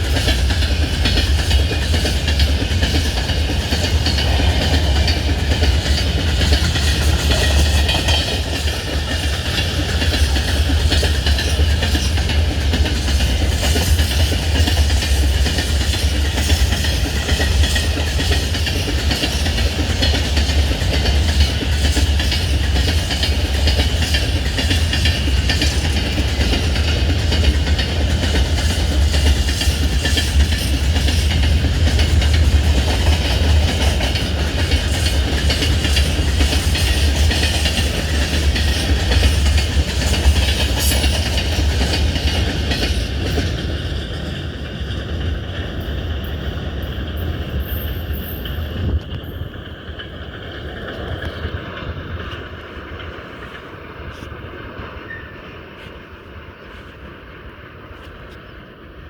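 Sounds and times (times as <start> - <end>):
train wheels clattering over rails: 0.0 - 56.0
low rumble of moving train: 0.0 - 59.0.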